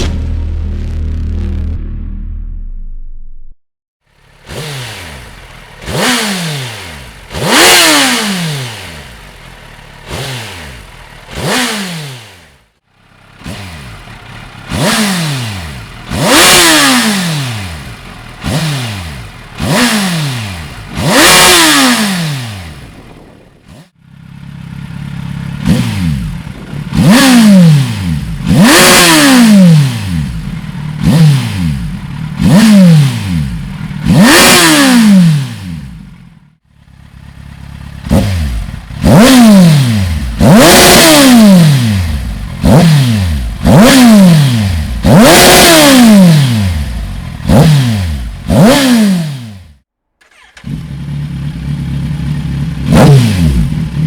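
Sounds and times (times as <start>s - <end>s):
motorcycle engine revving: 0.0s - 2.5s, 4.0s - 54.0s
engine idling: 12.8s - 16.4s, 17.8s - 18.6s, 35.9s - 39.3s, 50.2s - 54.0s.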